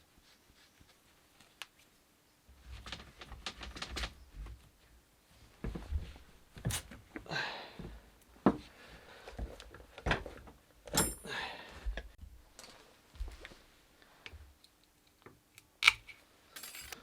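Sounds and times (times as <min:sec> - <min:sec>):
tools clicking and knocking: 0:15.6 - 0:17.0
metal scraping: 0:16.6 - 0:17.0.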